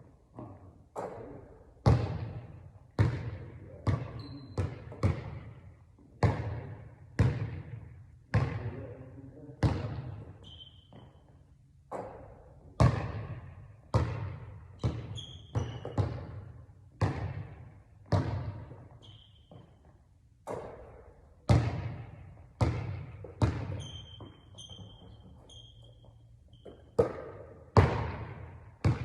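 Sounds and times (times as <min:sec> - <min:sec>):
basketball bouncing on hard court: 0:00.3 - 0:29.0
shoe squeaks: 0:04.0 - 0:05.0, 0:10.3 - 0:11.5, 0:14.7 - 0:16.2, 0:18.9 - 0:20.0, 0:23.6 - 0:27.0.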